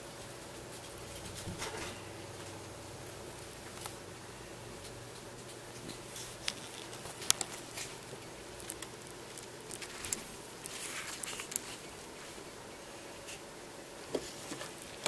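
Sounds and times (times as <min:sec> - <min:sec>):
hamster cracking seeds: 0:03.3 - 0:04.0, 0:04.8 - 0:12.2.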